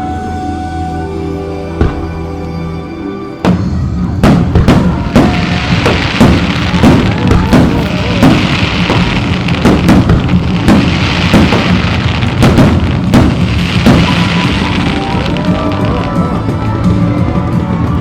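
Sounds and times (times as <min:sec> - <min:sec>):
music: 0:00.0 - 0:18.0
firework shells bursting: 0:03.4 - 0:15.5.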